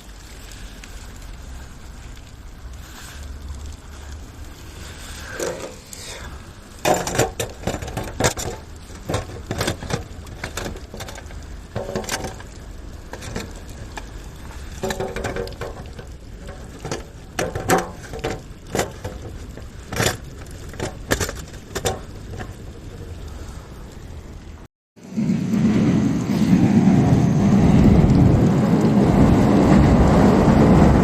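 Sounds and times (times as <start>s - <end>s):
fire pops and snaps: 0.0s - 24.5s
wood fire crackling: 0.0s - 31.0s.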